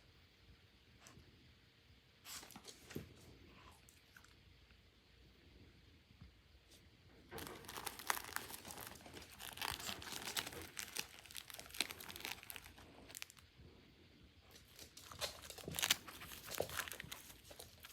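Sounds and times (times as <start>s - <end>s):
plastic packaging crinkling: 7.3s - 13.4s, 14.5s - 17.9s.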